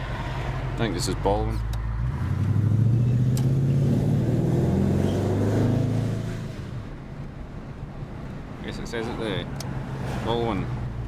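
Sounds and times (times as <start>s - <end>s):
car engine under throttle: 0.0s - 8.6s.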